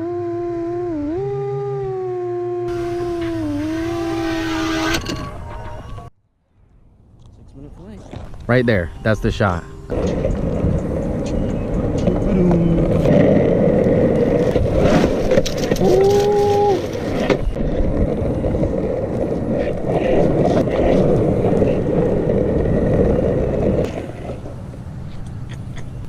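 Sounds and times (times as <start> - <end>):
quadcopter motor noise: 0.0 - 5.4
steady tone: 0.0 - 7.1
rushing wind: 2.7 - 26.0.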